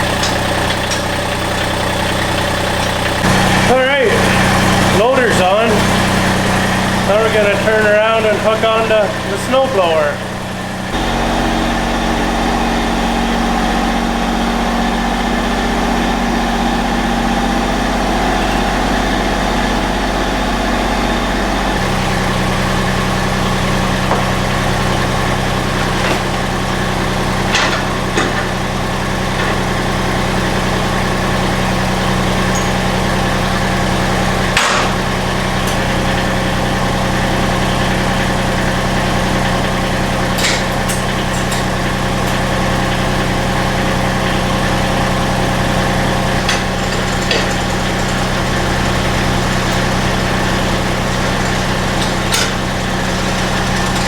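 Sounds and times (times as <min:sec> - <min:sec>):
lawn tractor engine running: 0:00.0 - 0:54.0.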